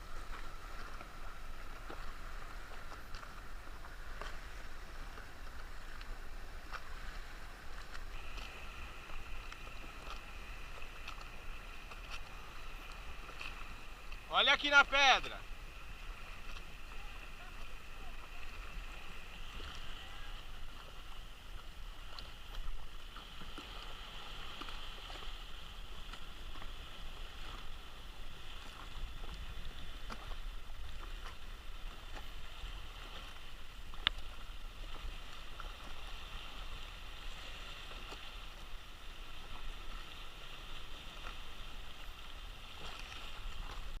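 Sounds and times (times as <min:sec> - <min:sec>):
water lapping and gurgling: 0:00.0 - 0:44.0
faint ticks: 0:07.8 - 0:14.3, 0:33.9 - 0:34.4.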